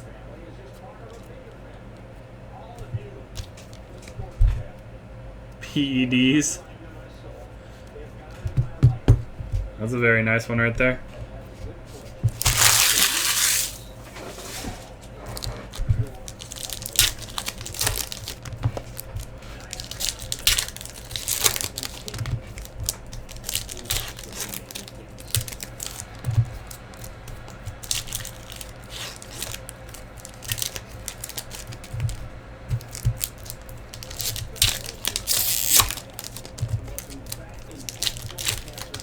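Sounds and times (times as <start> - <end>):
cards rustling and flicking: 11.5 - 39.0
wrappers crinkling and tearing: 11.9 - 39.0.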